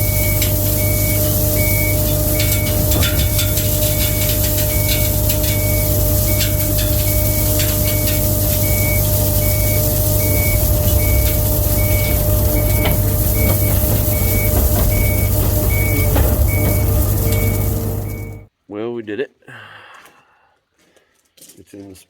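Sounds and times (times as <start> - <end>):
reversing alarm beeping: 0.0 - 18.5
skid steer engine running: 0.0 - 18.5
sharp metallic knocks: 2.4 - 18.4.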